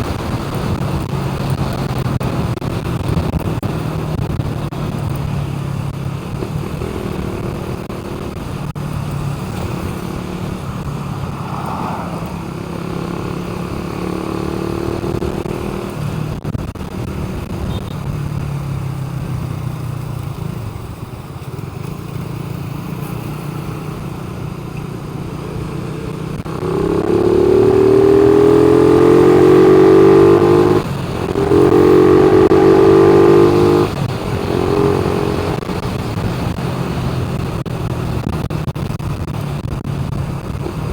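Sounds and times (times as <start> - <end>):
vehicle engine accelerating: 0.0 - 21.2, 21.8 - 40.9.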